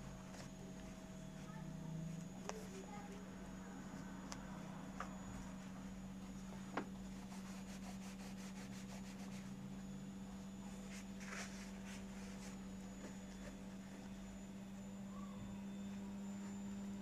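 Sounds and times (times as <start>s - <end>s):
steady low hum: 0.0s - 17.0s
faint rubbing and handling noises: 0.1s - 14.6s.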